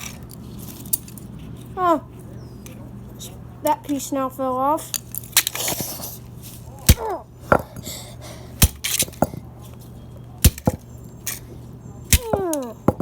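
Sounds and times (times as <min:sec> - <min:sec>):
knocks smashing plastic toy gun: 0:06.9 - 0:07.6, 0:08.6 - 0:09.3, 0:10.4 - 0:11.4, 0:12.1 - 0:13.0.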